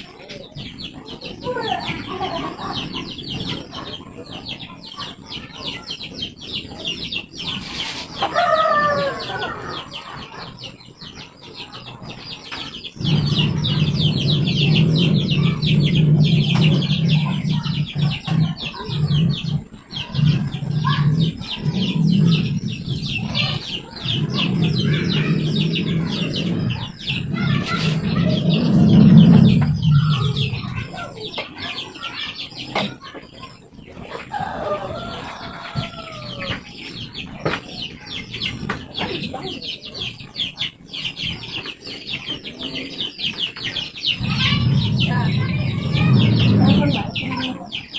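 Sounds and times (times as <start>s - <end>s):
rooster crowing: 8.2s - 9.8s, 34.3s - 36.6s
loud low hum: 13.0s - 31.1s.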